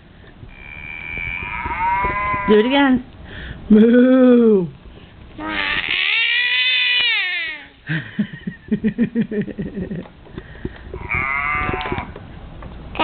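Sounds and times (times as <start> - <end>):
toddler imitating cow moo: 0.5 - 2.7, 5.4 - 7.7, 11.0 - 12.2
low murmurs: 0.5 - 2.8, 10.9 - 12.2.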